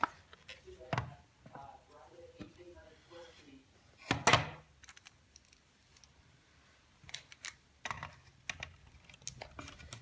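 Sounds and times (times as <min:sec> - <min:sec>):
plastic parts clicking and knocking: 0:04.0 - 0:06.2, 0:07.0 - 0:10.0.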